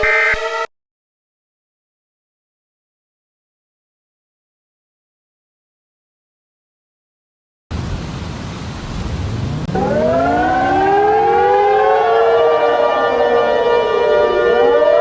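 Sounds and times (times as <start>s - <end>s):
sirens wailing: 9.6s - 15.0s.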